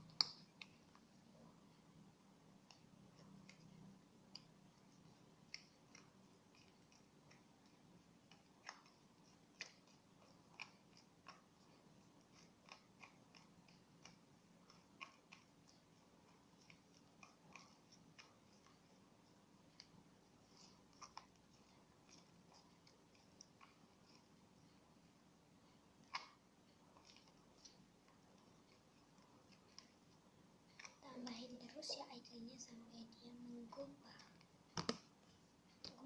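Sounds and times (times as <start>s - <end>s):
slime stirred sticky clicks: 0.0s - 1.2s, 1.8s - 24.7s, 26.0s - 32.0s.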